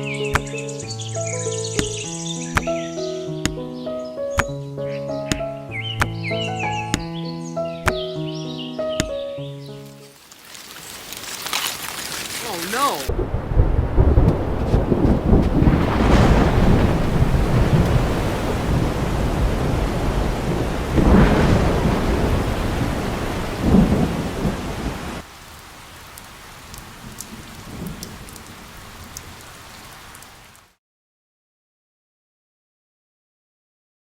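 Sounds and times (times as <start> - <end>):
heavy rain: 10.0 - 30.8
thunder rumbling: 12.6 - 25.3, 25.9 - 29.5.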